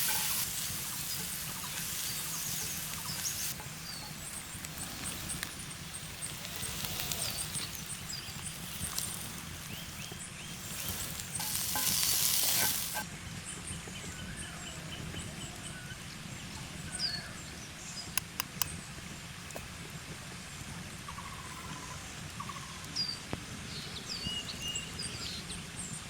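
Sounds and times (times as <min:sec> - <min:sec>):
food sizzling in a pan: 0:00.0 - 0:13.0
birds chirping: 0:00.0 - 0:13.1
sharp clicks: 0:18.2 - 0:18.8.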